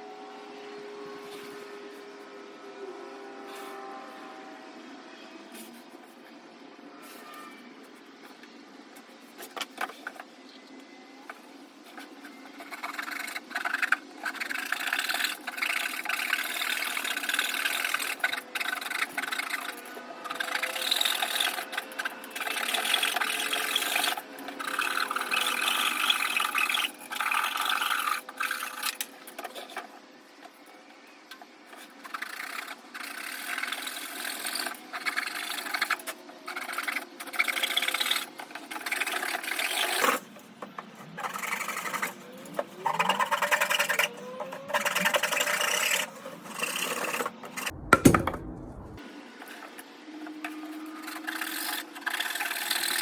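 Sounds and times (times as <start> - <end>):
loud thump: 47.7 - 49.0.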